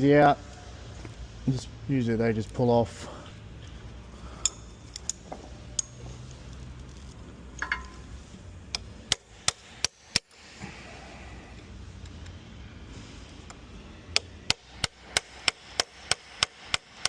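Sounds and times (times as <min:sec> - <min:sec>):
hammer tapping metal: 0:07.6 - 0:08.0.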